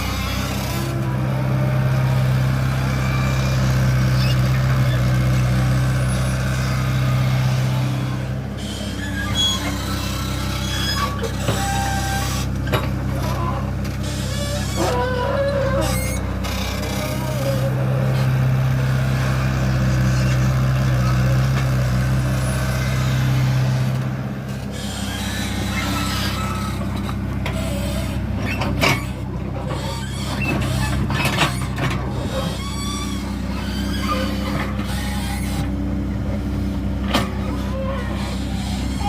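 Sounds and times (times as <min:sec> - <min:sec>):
excavator diesel engine running: 0:00.0 - 0:39.0.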